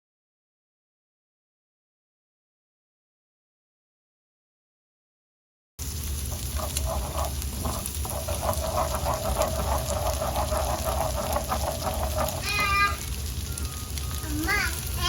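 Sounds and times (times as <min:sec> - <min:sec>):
food sizzling in a frying pan: 0:05.8 - 0:15.0.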